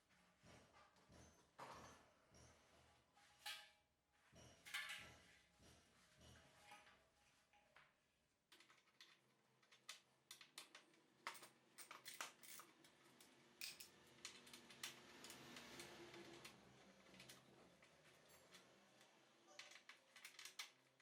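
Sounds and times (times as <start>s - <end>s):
metal parts and tools clicking: 8.6s - 18.8s, 19.5s - 20.9s.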